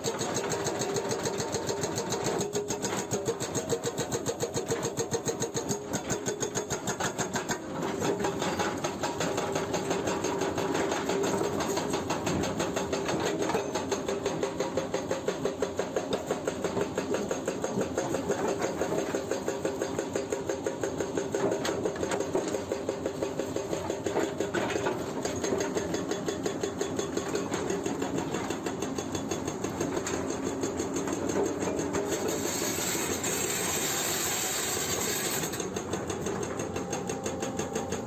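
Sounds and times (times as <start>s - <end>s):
excavator engine running: 21.2s - 38.0s.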